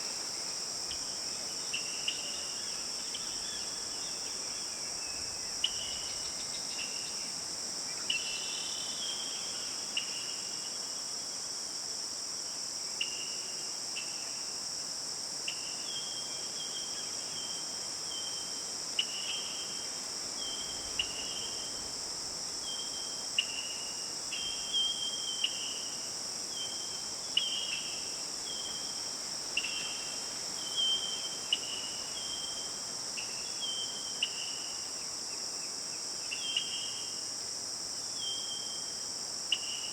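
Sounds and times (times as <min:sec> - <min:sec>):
insect chorus: 0:00.0 - 0:39.9.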